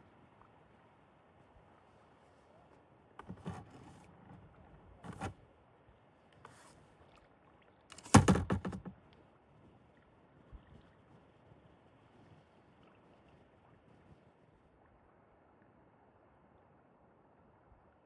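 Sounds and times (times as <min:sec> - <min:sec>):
paddle scraping and splashing: 0:03.2 - 0:05.4, 0:06.5 - 0:06.9, 0:07.9 - 0:08.9
paddle knocking against hull: 0:07.9 - 0:09.0.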